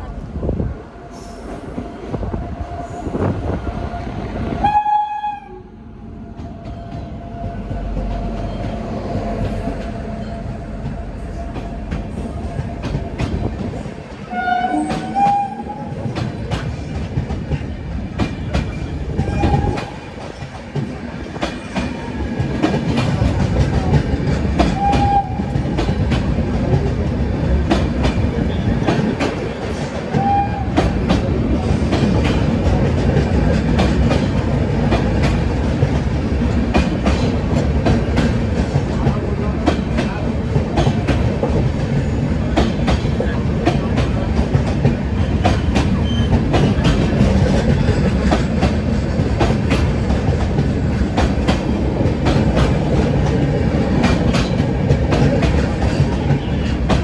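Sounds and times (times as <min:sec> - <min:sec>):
train running past: 0:00.0 - 0:57.0
train horn toots: 0:01.1 - 0:05.7, 0:14.2 - 0:16.0, 0:19.2 - 0:20.0, 0:24.6 - 0:25.8, 0:30.1 - 0:31.0.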